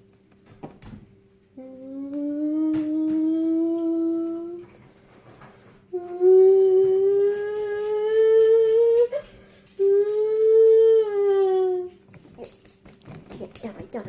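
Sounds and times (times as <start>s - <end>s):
person humming rising notes: 1.6s - 4.7s, 5.9s - 9.2s, 9.8s - 12.0s.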